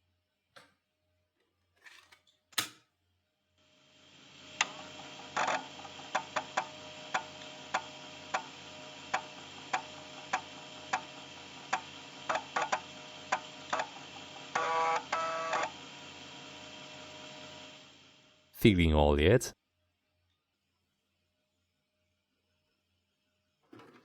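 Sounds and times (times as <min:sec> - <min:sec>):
hard drive and fans humming: 0:04.3 - 0:18.1.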